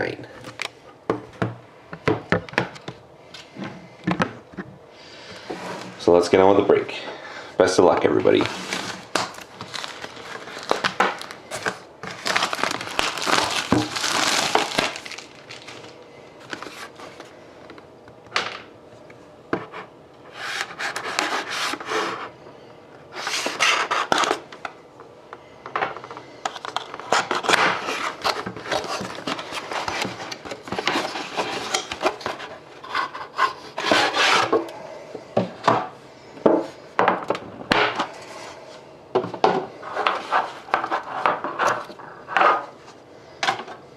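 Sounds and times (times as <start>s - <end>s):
packaging rubbing and scraping: 8.2s - 17.3s, 20.3s - 22.3s, 23.1s - 24.4s, 26.5s - 34.6s, 39.8s - 42.7s.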